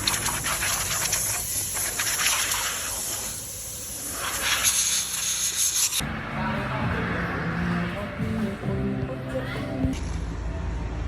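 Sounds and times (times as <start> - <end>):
hissing spray: 0.0 - 6.0.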